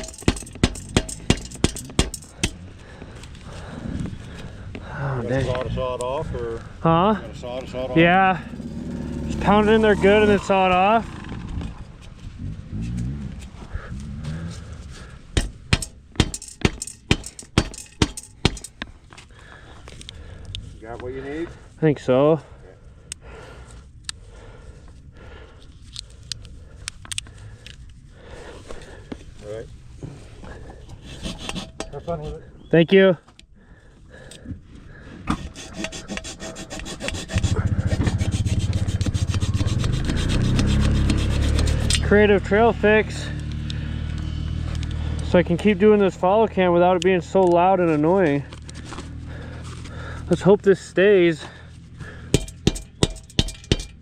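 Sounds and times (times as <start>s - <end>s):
stick pounded into metal pipe: 0.0s - 2.7s, 15.4s - 18.7s, 52.3s - 54.0s
dirt bike engine running: 0.0s - 4.7s, 6.8s - 18.7s, 37.2s - 54.0s.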